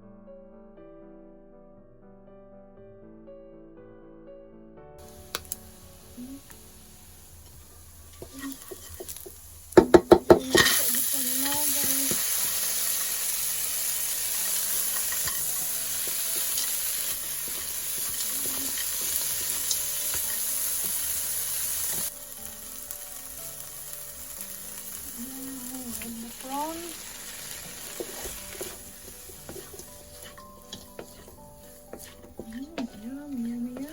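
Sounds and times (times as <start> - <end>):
food sizzling in oil: 5.0 - 33.9
utensil knocking against pan: 8.2 - 10.8, 27.9 - 33.9.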